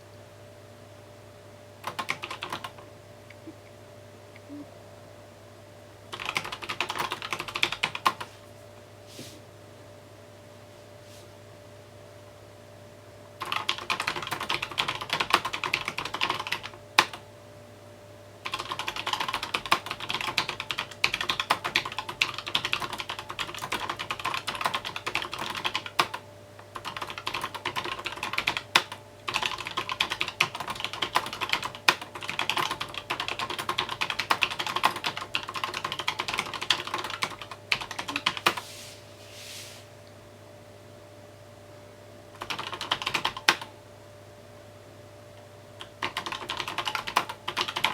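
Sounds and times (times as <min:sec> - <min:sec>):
faint steady hum: 0:00.0 - 0:47.9
typing on a mechanical keyboard: 0:01.8 - 0:02.8, 0:06.1 - 0:08.3, 0:13.4 - 0:17.2, 0:18.4 - 0:38.6, 0:42.4 - 0:43.7, 0:45.8 - 0:47.9.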